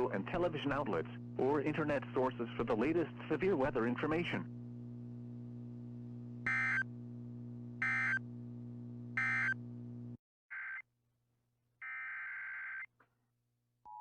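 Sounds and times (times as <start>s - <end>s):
steady electrical hum: 0.0s - 10.2s.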